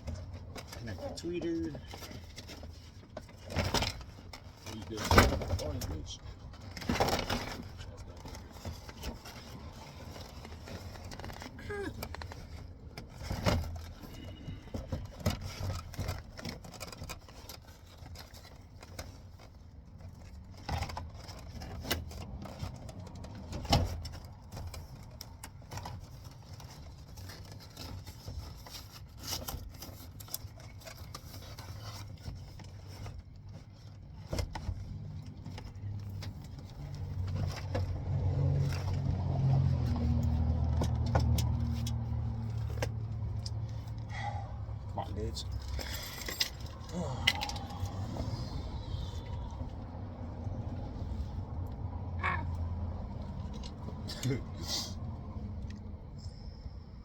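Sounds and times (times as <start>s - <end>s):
steady low rumble: 43.2s - 54.1s.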